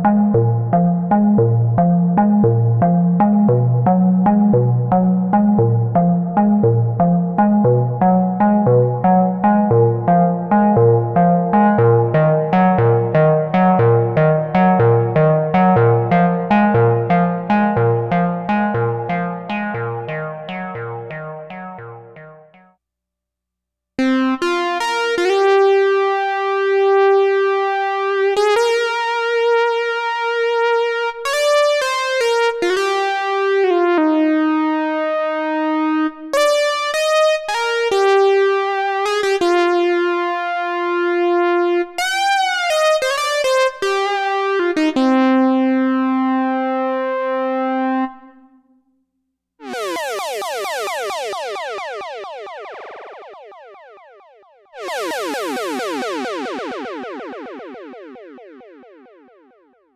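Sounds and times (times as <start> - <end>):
synthesizer lead melody: 0.0 - 22.8, 42.1 - 48.8, 49.6 - 59.9.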